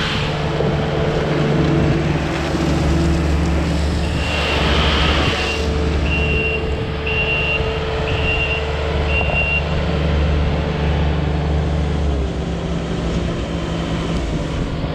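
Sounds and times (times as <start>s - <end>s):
diesel engine running: 0.0s - 14.9s
backup alarm beeps: 5.4s - 9.8s.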